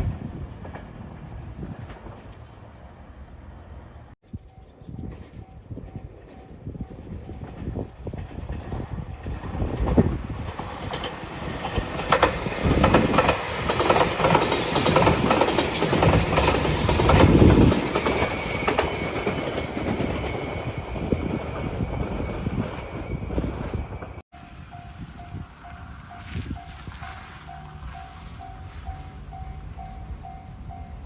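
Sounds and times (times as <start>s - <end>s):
electric train passing: 5.0s - 31.0s
wheels clacking over rail joints: 5.1s - 20.5s.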